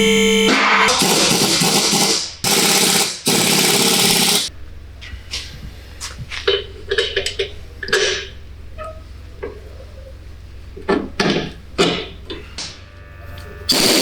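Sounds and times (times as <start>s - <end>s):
power tool running: 0.0s - 4.5s, 13.7s - 14.0s.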